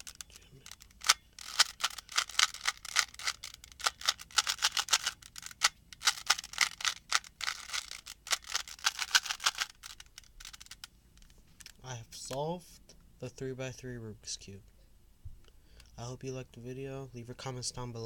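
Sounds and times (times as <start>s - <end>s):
puzzle cube clicking: 0.0s - 12.4s.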